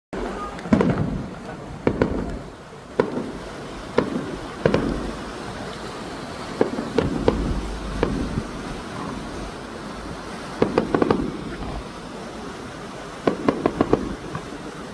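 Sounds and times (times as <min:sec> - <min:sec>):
fireworks bangs: 0:00.2 - 0:05.7, 0:06.4 - 0:14.9.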